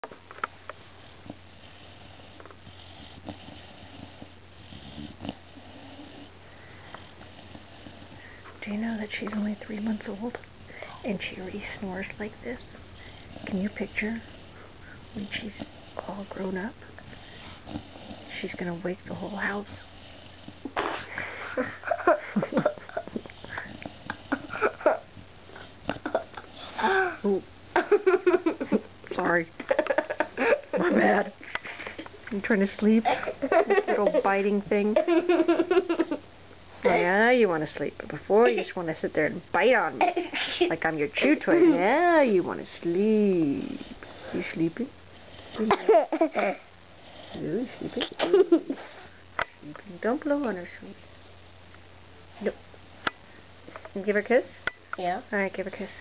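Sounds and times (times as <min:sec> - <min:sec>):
puppy snoring faintly: 0:00.8 - 0:27.2.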